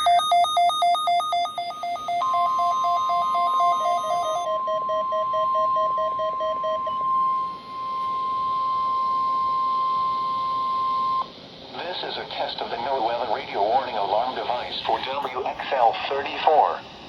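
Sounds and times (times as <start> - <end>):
quick beeps: 0.0 - 9.0
steady warning alarm tone: 0.0 - 11.3
warbling alarm: 0.0 - 11.3
radio hiss: 11.2 - 17.0.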